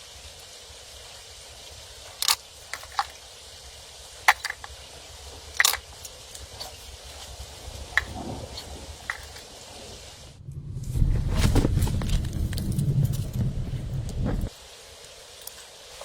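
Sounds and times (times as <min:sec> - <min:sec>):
sharp clicks and snaps: 0:02.2 - 0:03.2, 0:04.3 - 0:04.8, 0:05.5 - 0:06.8
low steady rumble: 0:06.9 - 0:14.5.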